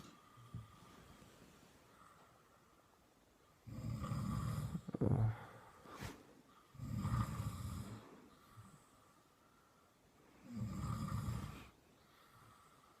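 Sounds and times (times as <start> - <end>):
person snoring: 3.6 - 5.7, 6.8 - 8.1, 10.4 - 11.8.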